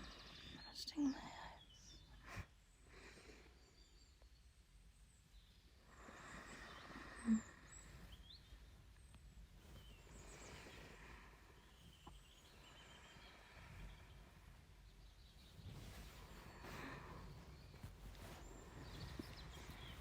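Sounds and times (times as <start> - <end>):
soft breathing: 0.0 - 4.3, 5.8 - 20.0.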